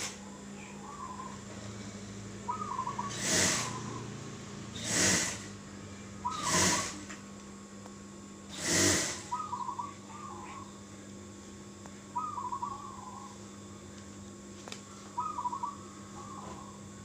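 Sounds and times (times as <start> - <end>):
dove cooing in trilled phrases: 2.4 - 4.1, 6.2 - 7.0, 9.2 - 10.8, 12.1 - 13.5, 15.2 - 17.0.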